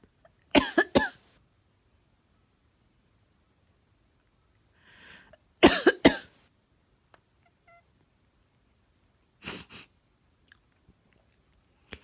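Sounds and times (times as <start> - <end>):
person sneezing loudly: 0.6 - 1.2, 5.6 - 6.3
soft sniffles: 9.4 - 9.9.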